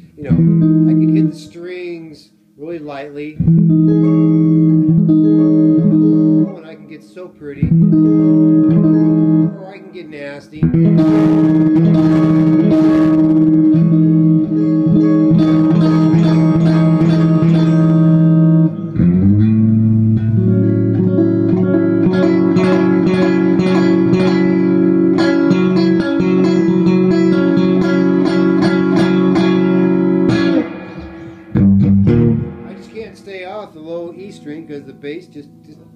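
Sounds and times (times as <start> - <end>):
distorted electric guitar chords: 0.0 - 1.6, 3.4 - 35.9.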